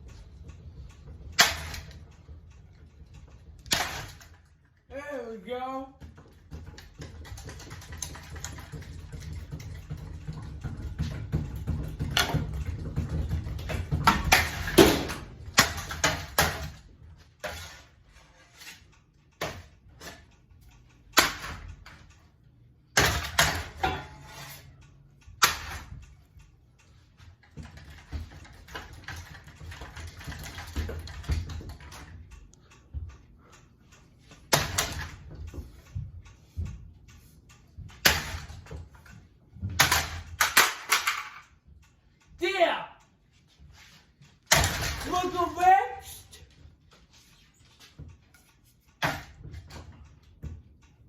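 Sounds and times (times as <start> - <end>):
knocks and clattering rattles: 0.0 - 4.8, 6.0 - 22.3, 22.9 - 33.3, 33.9 - 41.9
ceiling fan motor hum: 0.0 - 51.0.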